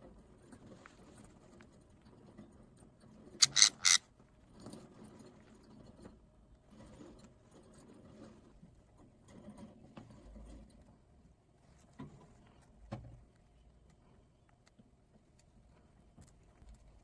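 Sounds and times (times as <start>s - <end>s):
faint scratching and rustling: 0.1s - 17.0s
parrot squawking: 3.4s - 4.0s.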